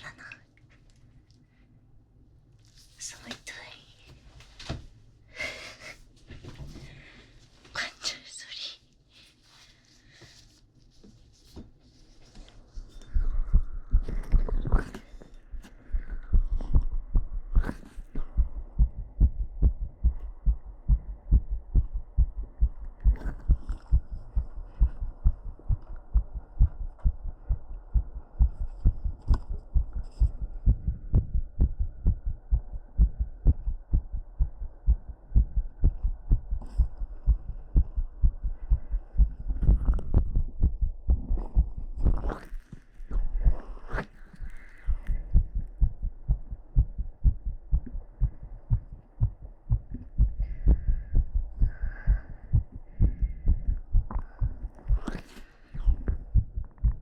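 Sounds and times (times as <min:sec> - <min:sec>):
rustling: 0:09.1 - 0:13.2
heartbeat thumps: 0:13.2 - 0:42.4, 0:44.9 - 0:55.2, 0:55.8 - 0:57.0.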